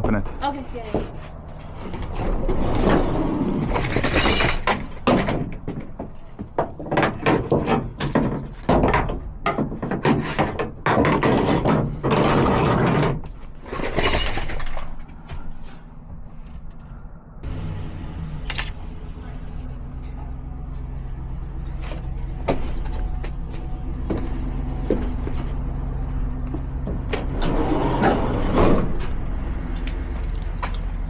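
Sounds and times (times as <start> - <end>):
tools clattering: 13.6 - 15.4.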